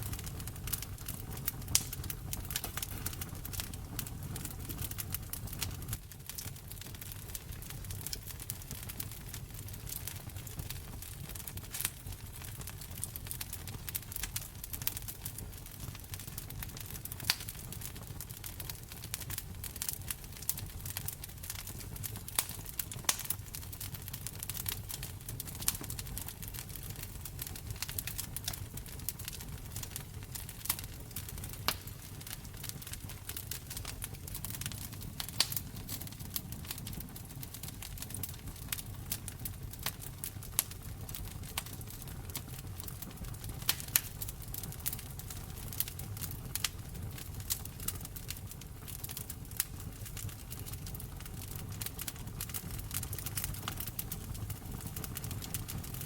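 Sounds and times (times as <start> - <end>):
sharp fire pops: 0.0 - 6.4, 9.4 - 17.8, 18.7 - 48.1
wood fire crackling: 0.0 - 56.0.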